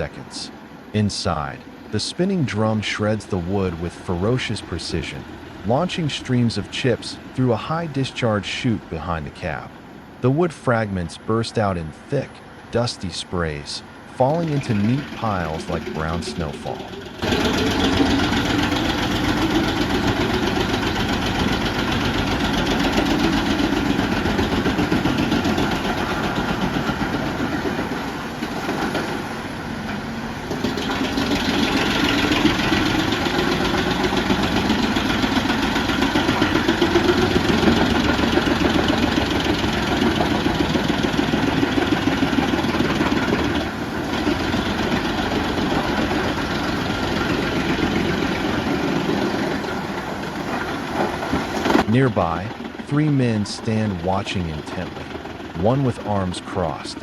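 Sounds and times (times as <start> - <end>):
wood chipper chewing logs: 29.9 - 52.9.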